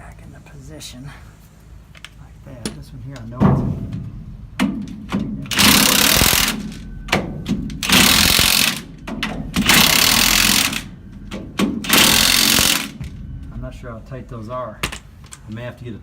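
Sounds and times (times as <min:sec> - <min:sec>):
impact wrench hammering: 0:04.6 - 0:13.2.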